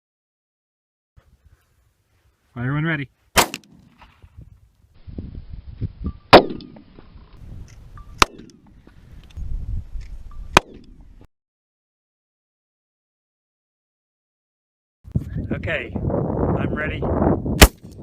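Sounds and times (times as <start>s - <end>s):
gunshots: 3.4s - 4.0s, 6.4s - 6.8s.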